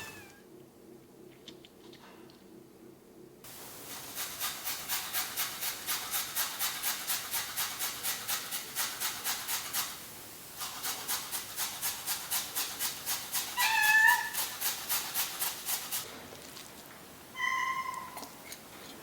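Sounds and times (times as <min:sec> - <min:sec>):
carrot grated on metal grater: 0:04.0 - 0:10.0, 0:10.6 - 0:16.0.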